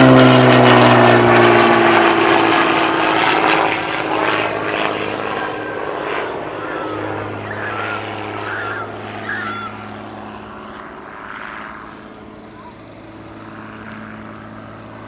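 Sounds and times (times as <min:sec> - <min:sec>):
airplane engine droning: 0:00.0 - 0:15.0
short warbling calls: 0:05.2 - 0:10.8.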